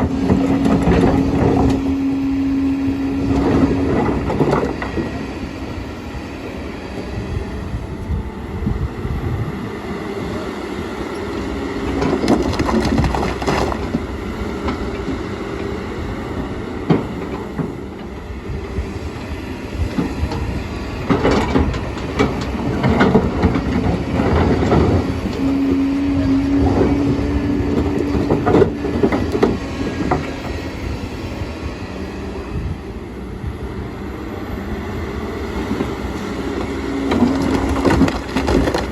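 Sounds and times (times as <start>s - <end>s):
excavator diesel engine running: 0.0s - 38.9s
steady whine: 0.0s - 38.9s
stones knocking and scraping: 37.0s - 38.9s.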